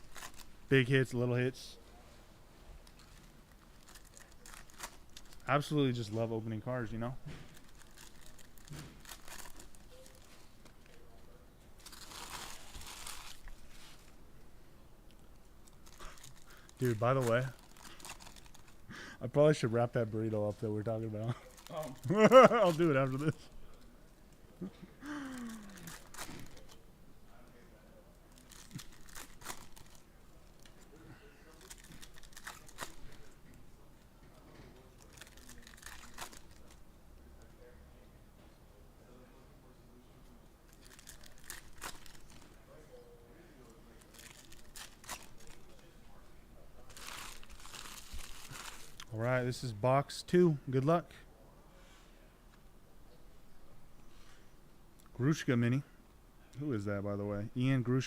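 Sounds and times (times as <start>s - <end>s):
wrappers crinkling and tearing: 0.0s - 0.6s, 2.8s - 6.0s, 7.5s - 11.1s, 11.8s - 14.2s, 15.3s - 18.8s, 21.3s - 23.4s, 25.0s - 26.8s, 28.3s - 33.6s, 34.8s - 36.8s, 40.7s - 42.7s, 43.9s - 45.9s, 46.8s - 49.2s.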